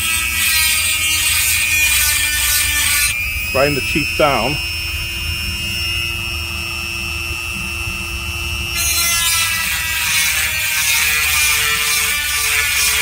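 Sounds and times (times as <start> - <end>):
grinder motor whining: 0.0 - 13.0.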